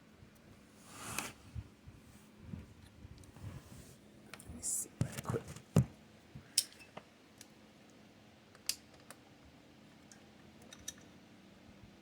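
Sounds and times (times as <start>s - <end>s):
locking pliers clicking on metal: 10.1s - 11.1s.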